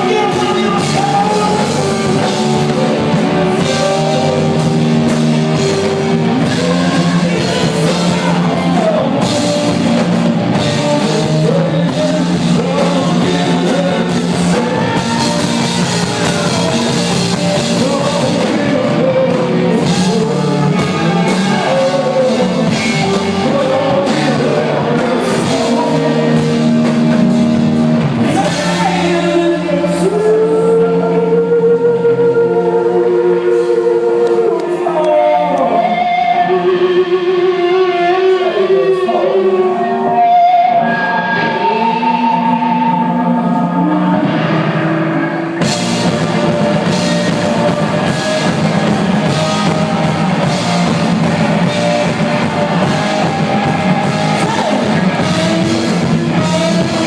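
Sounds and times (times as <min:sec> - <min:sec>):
electric guitar: 0:00.0 - 0:57.0
person singing long notes: 0:00.0 - 0:57.0
drum kit with crashing cymbals: 0:00.1 - 0:29.2.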